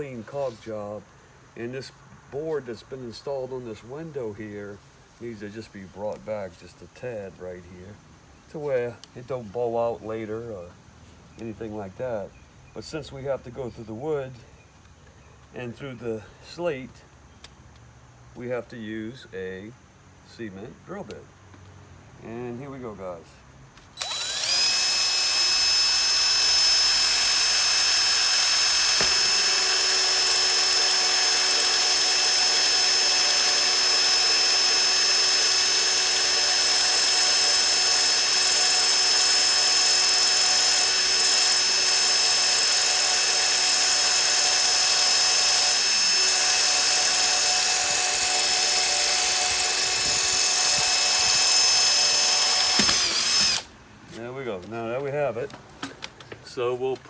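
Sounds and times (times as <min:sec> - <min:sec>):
electric drill whining: 0:24.0 - 0:53.7.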